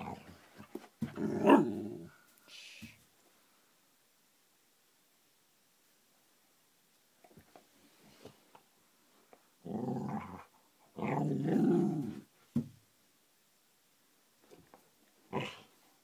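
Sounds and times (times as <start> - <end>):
dog growling bark: 1.0 - 2.2, 9.6 - 12.2, 15.3 - 15.8.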